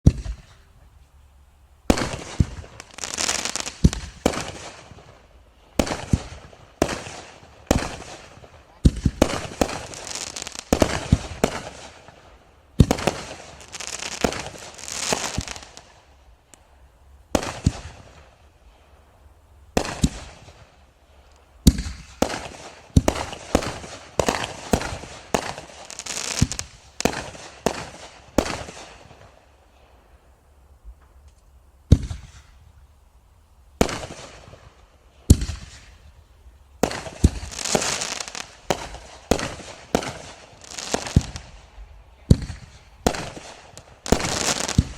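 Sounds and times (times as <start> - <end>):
firework bangs: 0.0 - 0.6, 1.9 - 5.2, 5.8 - 12.2, 12.8 - 15.9, 17.3 - 18.3, 19.7 - 20.8, 21.6 - 29.4, 31.9 - 32.6, 33.8 - 36.0, 36.8 - 41.7, 42.3 - 44.9
crackling fizzing firework tails: 0.0 - 44.9.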